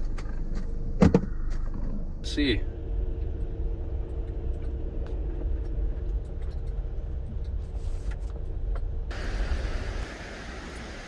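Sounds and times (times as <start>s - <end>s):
road rumble inside van: 0.0s - 11.0s
outdoor hiss: 9.1s - 11.0s.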